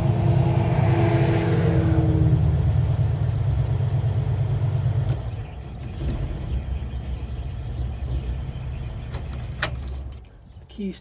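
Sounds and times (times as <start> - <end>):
engine idling: 2.3 - 10.6.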